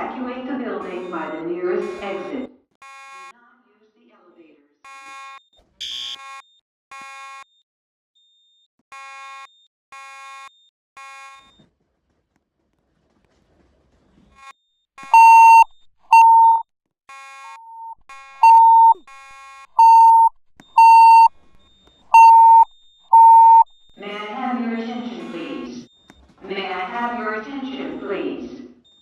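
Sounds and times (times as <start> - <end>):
fire alarm beeping: 0.9 - 2.4, 15.2 - 16.6, 17.7 - 19.0, 19.8 - 21.3, 22.2 - 23.6.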